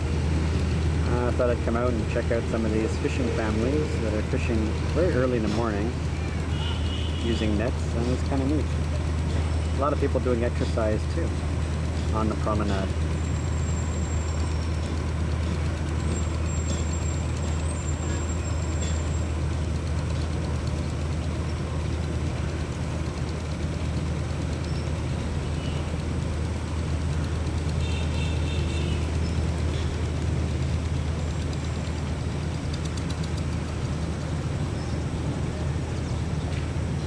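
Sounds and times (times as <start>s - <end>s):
low engine drone: 0.0s - 37.0s
outdoor noise: 0.0s - 37.0s.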